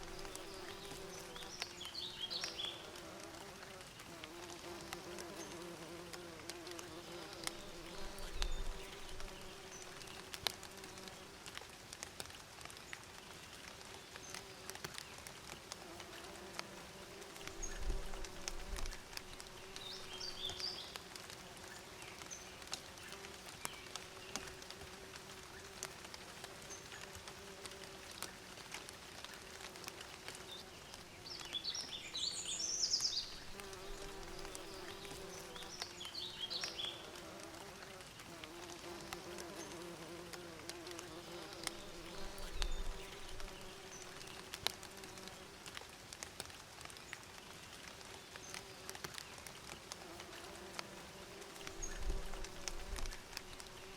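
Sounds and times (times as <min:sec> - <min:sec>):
bees buzzing: 0:33.3 - 0:45.3.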